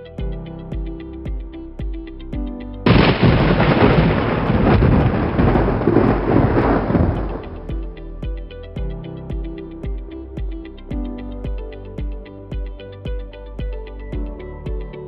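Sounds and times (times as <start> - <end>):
background music with steady beat: 0.0 - 15.0
thunderclap rumbling: 2.9 - 7.8.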